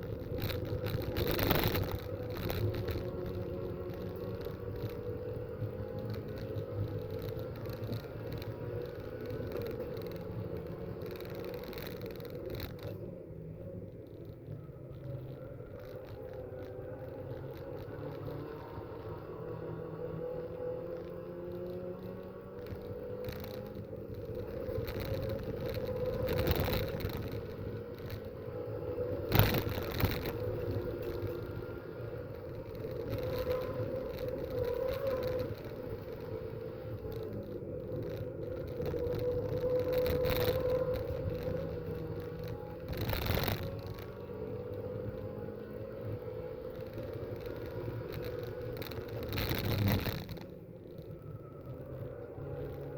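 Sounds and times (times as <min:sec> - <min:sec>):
race car engines droning: 0:00.0 - 0:52.9.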